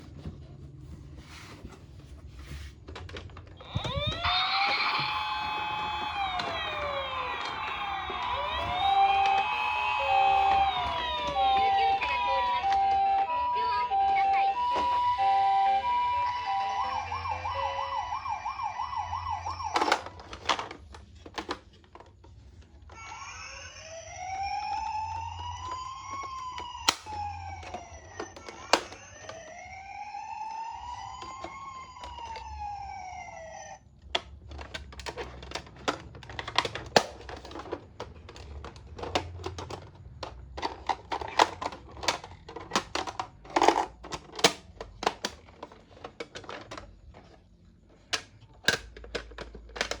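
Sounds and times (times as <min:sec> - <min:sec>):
toy electronic siren: 0:03.6 - 0:20.4, 0:23.0 - 0:33.8.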